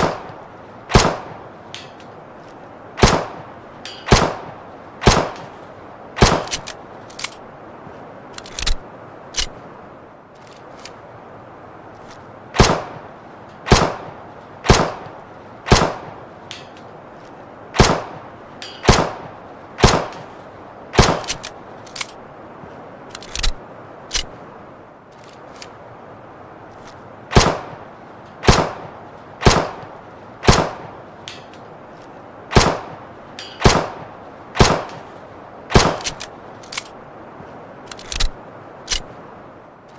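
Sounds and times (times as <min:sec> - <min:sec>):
pistol shots: 0:00.9 - 0:01.3, 0:03.0 - 0:03.4, 0:04.1 - 0:05.4, 0:28.4 - 0:28.8, 0:30.4 - 0:30.8, 0:32.5 - 0:32.9, 0:34.6 - 0:35.0, 0:35.7 - 0:36.2.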